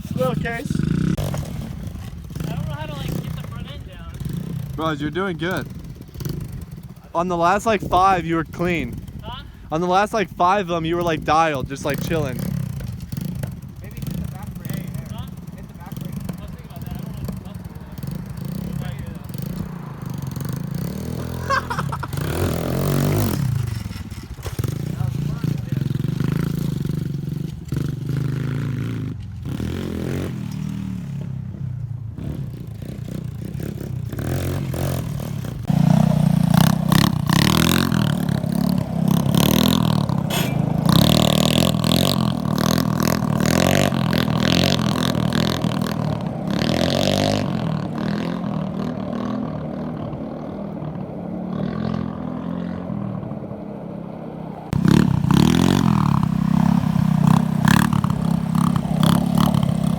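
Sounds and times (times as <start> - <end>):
scooter engines revving: 0.0 - 59.9
clattering and scraping: 40.2 - 41.2.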